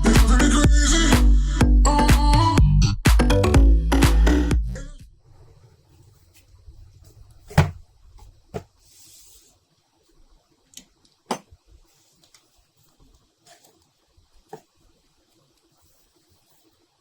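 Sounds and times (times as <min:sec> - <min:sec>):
knocks on packaging: 0:07.5 - 0:07.8.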